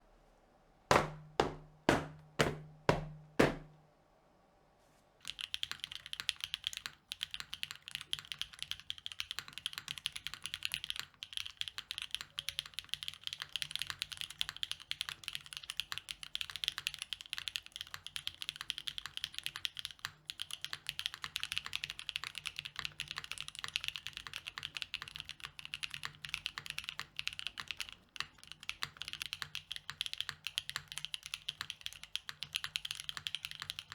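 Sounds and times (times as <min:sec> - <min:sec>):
loud thuds with low ring: 0:00.9 - 0:03.8
mechanical keyboard typing: 0:05.2 - 0:33.9.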